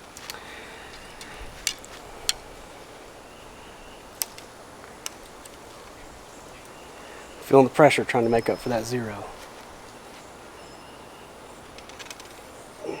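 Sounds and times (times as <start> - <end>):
quiet outdoor background: 0.0 - 13.0
archery gear clicking: 0.1 - 2.4.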